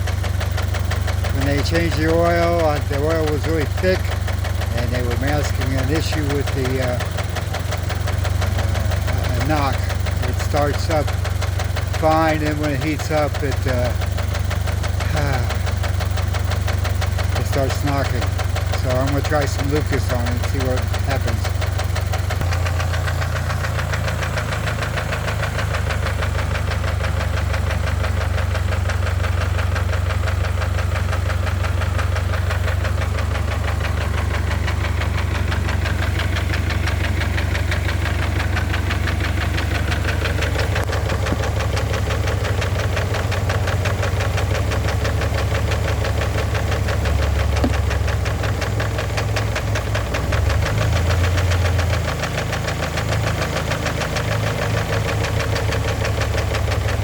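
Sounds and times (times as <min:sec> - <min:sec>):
engine running with rapid knocking: 0:00.0 - 0:57.0.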